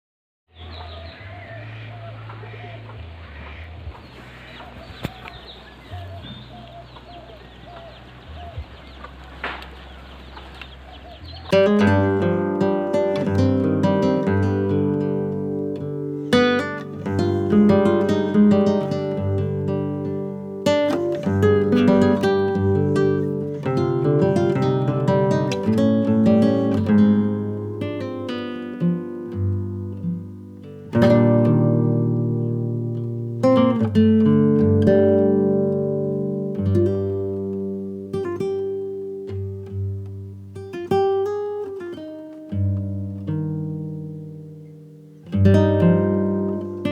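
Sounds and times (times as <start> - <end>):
acoustic guitar strumming chords: 11.5 - 46.9.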